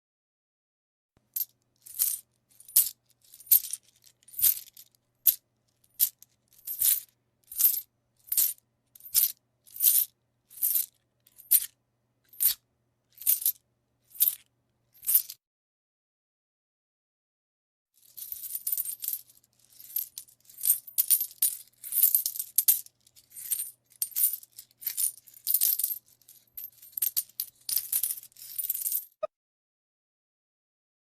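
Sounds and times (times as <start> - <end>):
coins dropping and clinking: 1.4 - 10.0, 13.2 - 13.5, 18.2 - 29.2.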